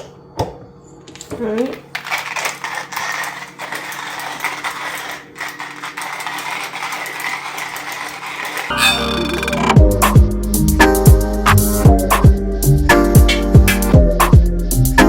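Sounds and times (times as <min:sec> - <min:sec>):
coffee beans rattling and crackling: 0:01.2 - 0:08.7
coffee grinder motor hum: 0:01.9 - 0:08.8.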